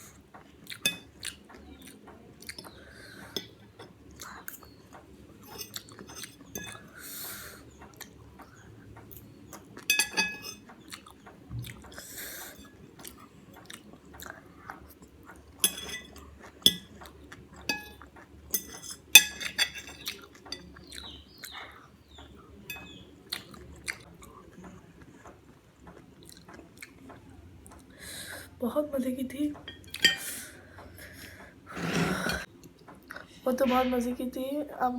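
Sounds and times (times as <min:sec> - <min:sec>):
chewing and mouth sounds: 0:00.4 - 0:03.0, 0:10.6 - 0:18.4, 0:20.0 - 0:27.9
cutlery clinking against a plate: 0:00.4 - 0:21.3, 0:22.2 - 0:25.5, 0:29.6 - 0:30.5.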